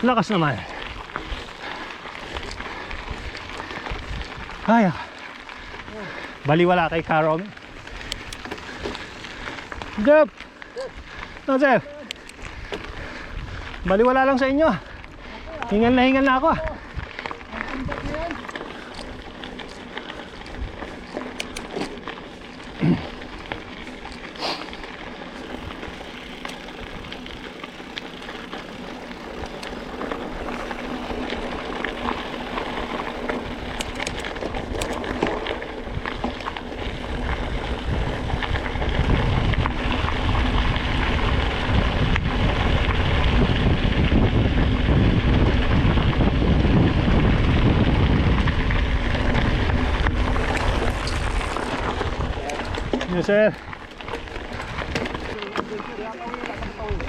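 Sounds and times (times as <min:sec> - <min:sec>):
wind buffeting microphone: 0:00.0 - 0:11.5, 0:12.1 - 0:57.0
tyre and trail noise: 0:00.0 - 0:57.0
sharp clicks: 0:21.2 - 0:21.8.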